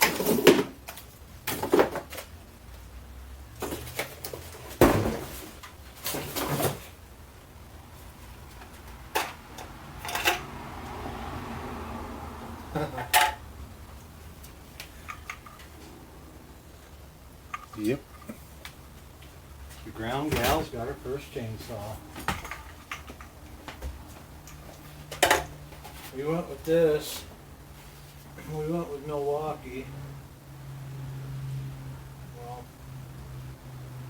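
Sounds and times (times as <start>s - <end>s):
objects knocking and clattering: 0.0s - 2.4s, 3.5s - 7.0s, 8.5s - 10.5s, 12.8s - 13.5s, 14.8s - 15.9s, 17.4s - 18.7s, 22.1s - 26.1s.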